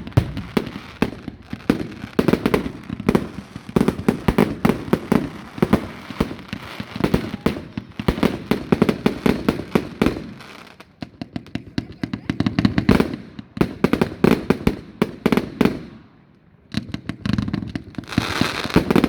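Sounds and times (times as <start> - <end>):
fireworks booms: 0.0 - 10.4
fireworks bursting and cracking: 0.0 - 19.0.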